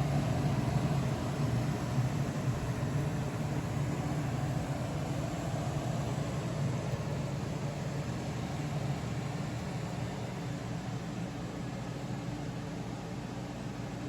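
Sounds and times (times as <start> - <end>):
air conditioner hum: 0.0 - 14.0
fan air rushing: 0.0 - 14.0.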